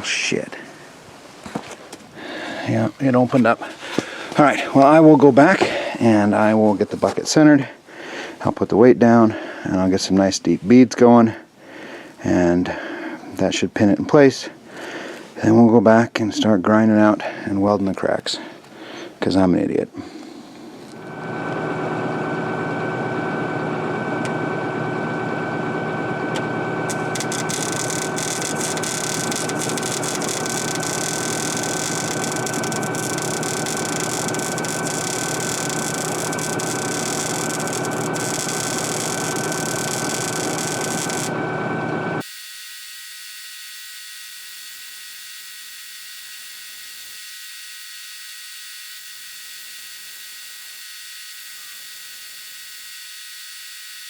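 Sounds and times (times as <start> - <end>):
steady high buzz: 20.9 - 54.0
welding arc crackling: 26.2 - 54.0.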